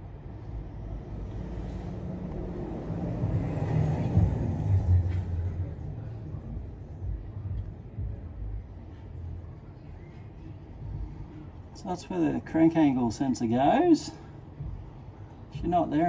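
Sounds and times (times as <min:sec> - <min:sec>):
low rumble: 0:00.0 - 0:09.6.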